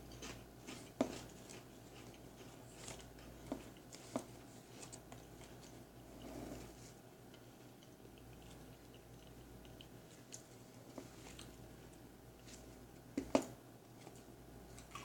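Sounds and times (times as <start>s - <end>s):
potato crisp crunching: 0.0s - 5.7s.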